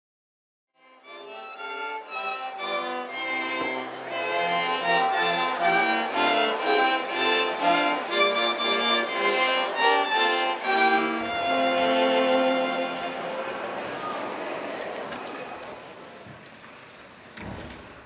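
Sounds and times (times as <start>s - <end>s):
bowed strings melody: 0.8s - 13.9s.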